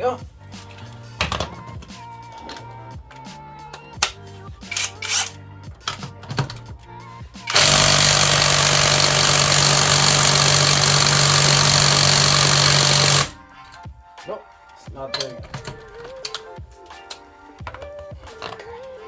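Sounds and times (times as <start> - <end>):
impact driver hammering on bolt: 7.5 - 13.4.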